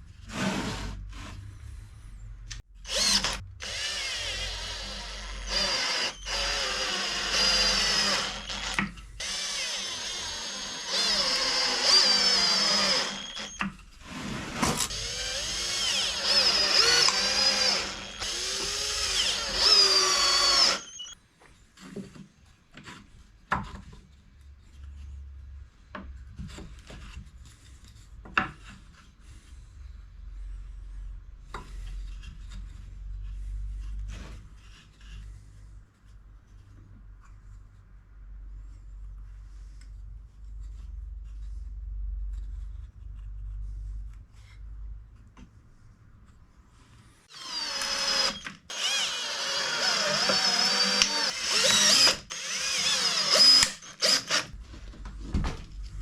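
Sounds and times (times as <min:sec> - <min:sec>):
power tool running under load: 0:02.9 - 0:13.6, 0:14.8 - 0:21.2, 0:47.3 - 0:54.6.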